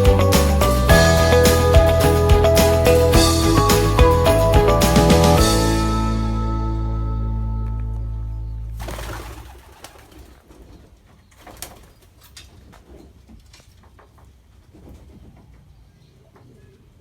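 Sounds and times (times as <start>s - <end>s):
music track: 0.0s - 8.8s.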